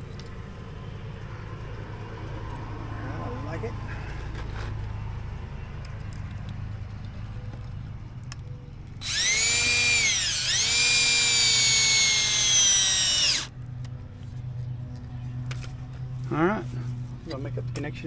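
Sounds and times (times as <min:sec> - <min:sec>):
cordless drill motor whine: 0:09.0 - 0:13.5.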